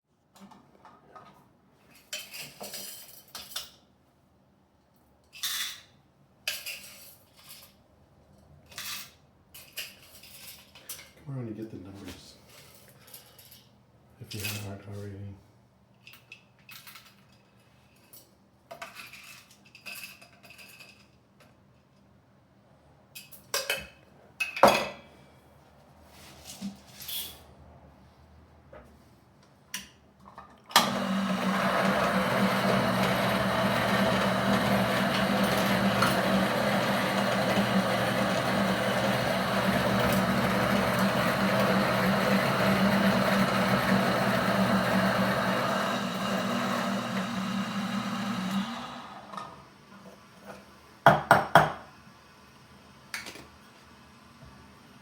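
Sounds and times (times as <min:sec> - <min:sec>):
coffee grinder motor grinding: 0:30.7 - 0:49.6.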